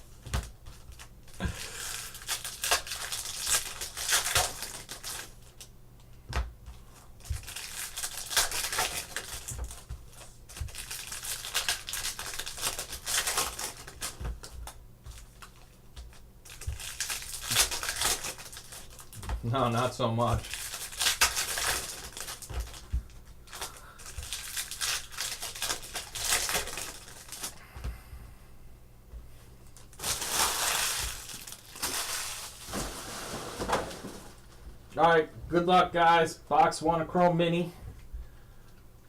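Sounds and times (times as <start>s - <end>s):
plastic packaging crinkling and tearing: 0.4s - 5.7s, 7.2s - 27.6s, 29.7s - 34.6s.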